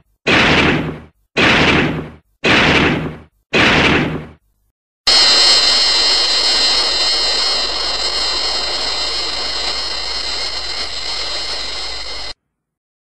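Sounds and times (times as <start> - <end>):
high multi-tone whine: 5.1 - 12.4
rushing hiss: 5.1 - 12.4.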